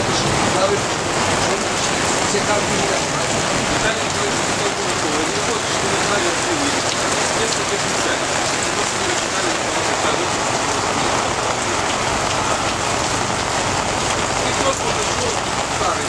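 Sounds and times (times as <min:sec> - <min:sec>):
heavy rain downpour: 0:00.0 - 0:16.0.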